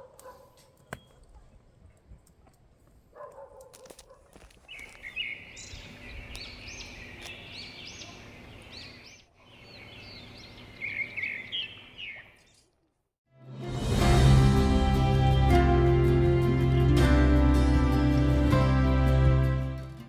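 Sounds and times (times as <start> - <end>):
birds chirping and singing: 4.6 - 12.6.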